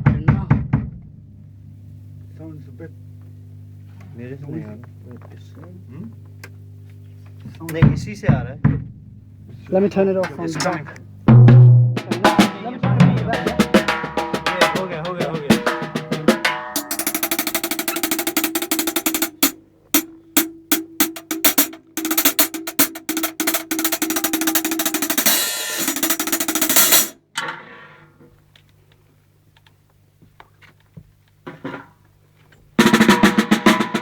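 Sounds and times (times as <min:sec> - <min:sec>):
low steady hum: 0:00.9 - 0:11.9
snare drum rolls: 0:11.3 - 0:27.2, 0:32.8 - 0:34.0.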